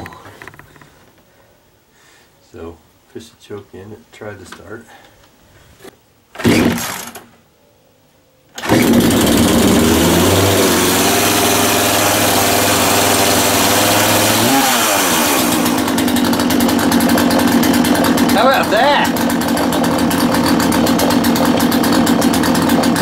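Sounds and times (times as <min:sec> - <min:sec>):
chainsaw engine starting and running: 0:06.4 - 0:07.2, 0:08.6 - 0:23.0.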